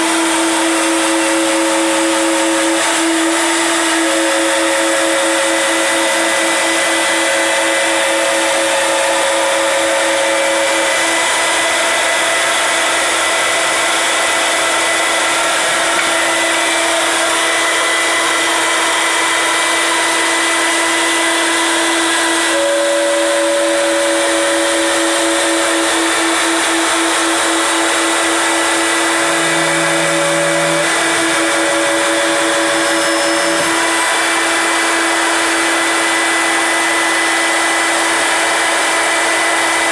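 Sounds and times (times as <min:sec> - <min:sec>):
cnc machine cutting wood: 0:00.0 - 0:39.9
constant machine whine: 0:22.0 - 0:34.9.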